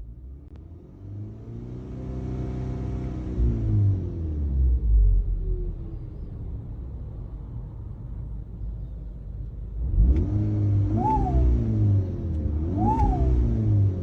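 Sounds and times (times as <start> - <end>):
car engine rumbling and revving: 0.0 - 14.0.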